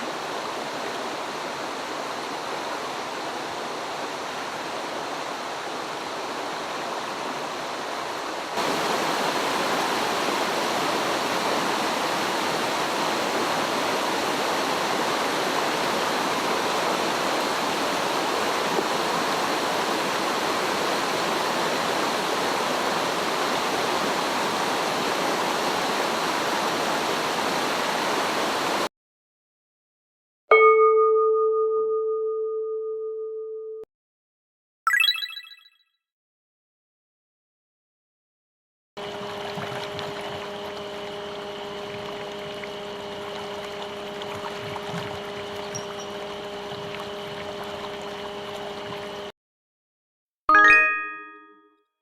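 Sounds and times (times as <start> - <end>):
stream water rushing: 0.0 - 28.9, 39.0 - 49.3.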